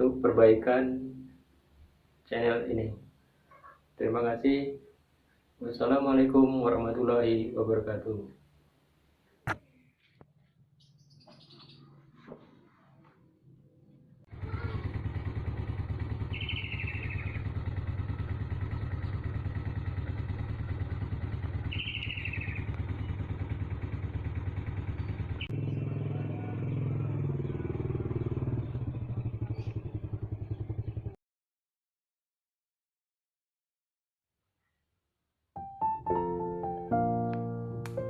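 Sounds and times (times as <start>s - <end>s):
small engine running: 14.3s - 31.2s
high chirps: 21.7s - 22.7s.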